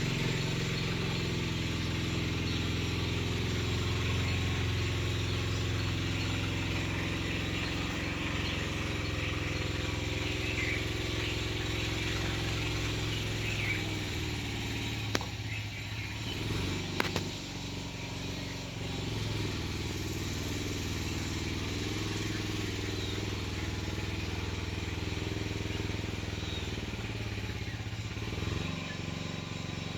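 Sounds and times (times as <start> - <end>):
vehicle engine running: 0.0 - 29.9
sharp clicks: 15.0 - 15.5, 16.9 - 17.4.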